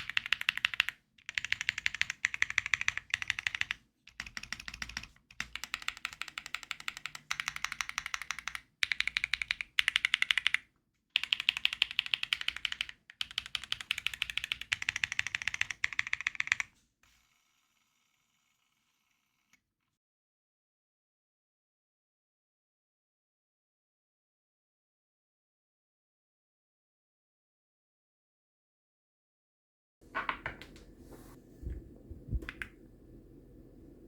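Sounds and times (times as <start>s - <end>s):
fast mechanical keyboard typing: 0.0s - 10.6s, 11.2s - 16.7s.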